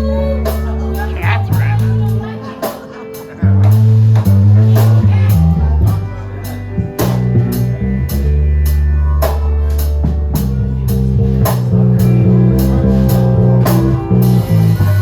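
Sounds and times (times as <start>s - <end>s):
electric bass guitar low notes: 0.0s - 15.0s
drum kit strikes: 2.6s - 6.0s, 7.0s - 7.8s, 9.2s - 15.0s.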